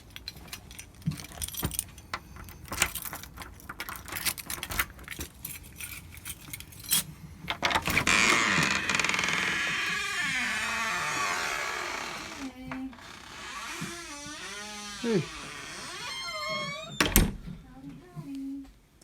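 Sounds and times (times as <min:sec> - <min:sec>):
keys jangling: 0:00.0 - 0:07.4.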